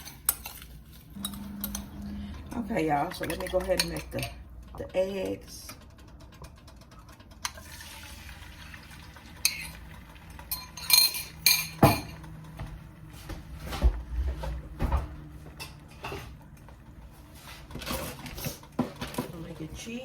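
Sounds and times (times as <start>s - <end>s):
dishes and utensils clinking: 0.0s - 4.4s, 9.4s - 12.5s, 15.5s - 16.4s.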